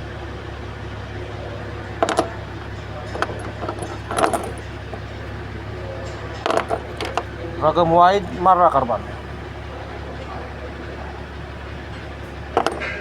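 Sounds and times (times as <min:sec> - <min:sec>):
engine idling with misfire: 0:00.0 - 0:13.0
metallic clinks of tools: 0:02.0 - 0:05.4, 0:06.0 - 0:07.4, 0:12.6 - 0:13.0.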